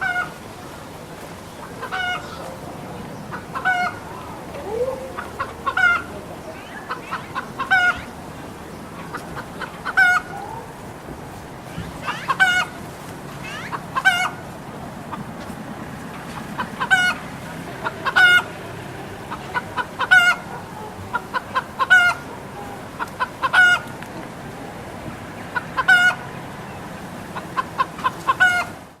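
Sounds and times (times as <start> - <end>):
junglefowl harsh calls: 0.0 - 0.8, 1.6 - 10.9, 11.6 - 15.3, 16.1 - 29.0.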